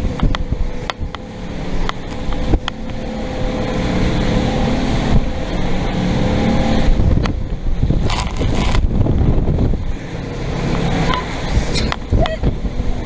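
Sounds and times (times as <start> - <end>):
motorboat engine running: 0.0 - 13.0
rushing wind: 0.0 - 13.0
water noise: 0.0 - 13.0.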